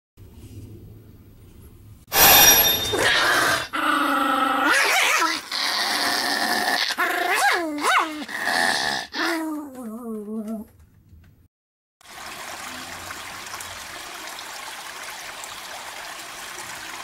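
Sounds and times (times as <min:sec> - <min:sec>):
dog barking and growling: 0:02.9 - 0:10.7
dog yelping: 0:06.8 - 0:08.5.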